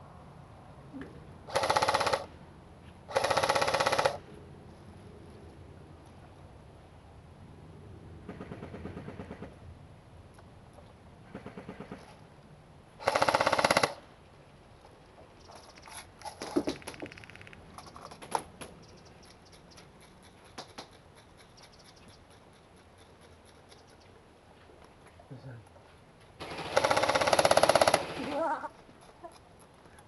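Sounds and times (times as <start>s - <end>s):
airsoft rifle full-auto burst: 1.5s - 2.3s, 3.1s - 4.2s, 13.0s - 14.0s, 26.4s - 28.4s
sharp clicks and pops: 15.4s - 18.9s
faint rapid string of shots: 26.4s - 28.4s.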